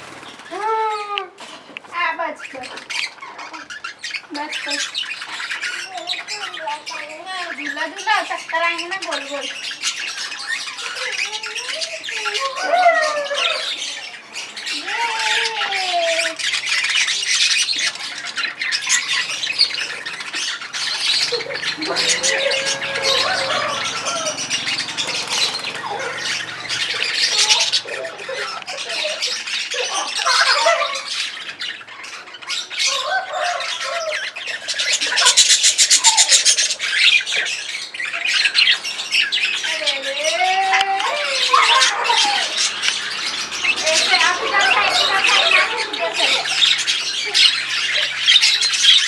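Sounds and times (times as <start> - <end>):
lovebirds chattering and squawking: 0.0 - 49.0
fast buzzing bird trill: 16.3 - 30.8.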